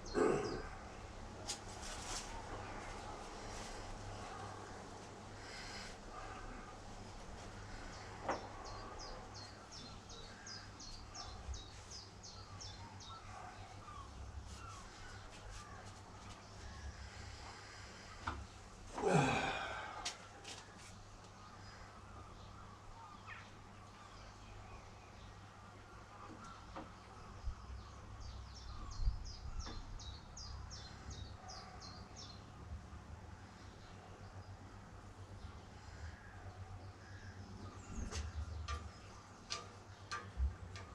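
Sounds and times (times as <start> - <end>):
lower short bird calls: 0.0 - 0.8.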